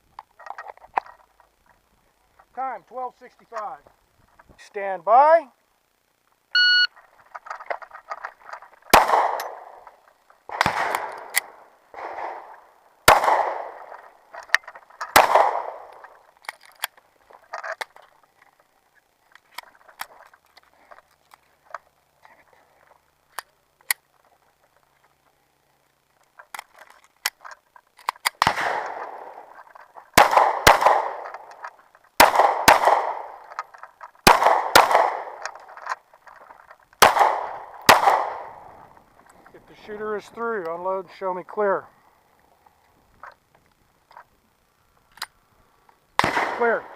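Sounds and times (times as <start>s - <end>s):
handgun shots with echo: 9.0s - 9.8s, 10.5s - 12.5s, 13.1s - 13.9s, 15.1s - 16.0s, 28.4s - 29.4s, 34.3s - 35.5s, 37.0s - 38.6s, 46.2s - 46.9s.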